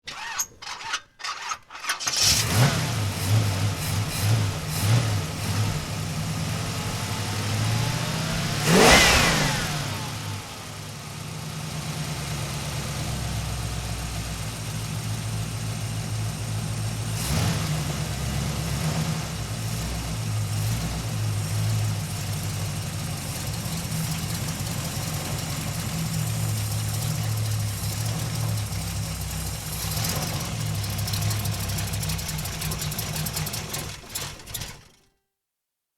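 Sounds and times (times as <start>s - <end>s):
car engine cranking and starting: 0.0s - 35.1s
car engine idling and revving: 2.0s - 35.0s.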